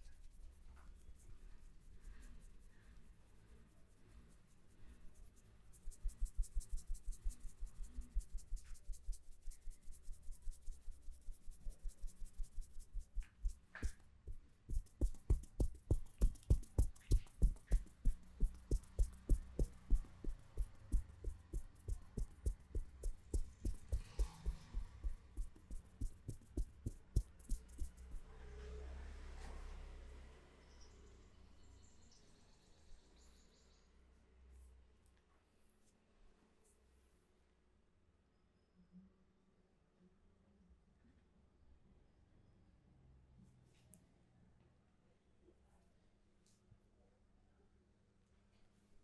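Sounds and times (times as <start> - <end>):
hands slapping head massage: 5.7 - 28.2.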